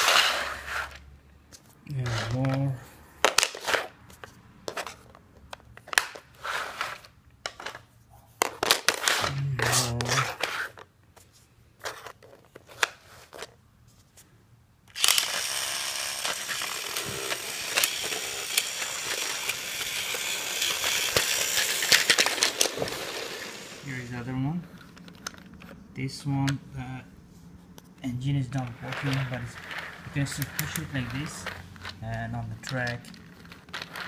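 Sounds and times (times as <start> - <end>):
plastic track pieces clicking: 14.9 - 23.9, 28.5 - 34.0.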